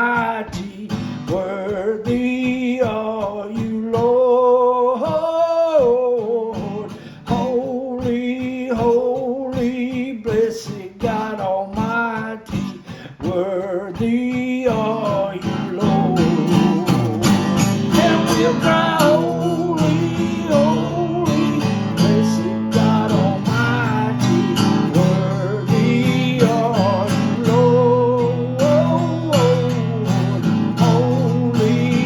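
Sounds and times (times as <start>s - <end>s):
acoustic guitar strumming: 0.0s - 32.0s.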